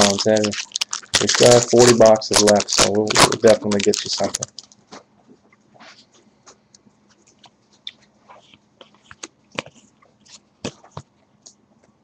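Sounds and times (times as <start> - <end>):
trading cards clicking and snapping: 0.0 - 4.8.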